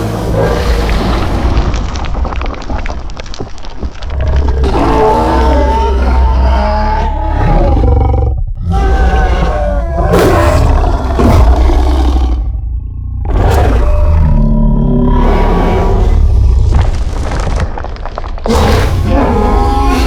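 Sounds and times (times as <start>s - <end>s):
monster growling roars: 4.2s - 12.6s, 13.2s - 16.8s, 18.5s - 20.0s.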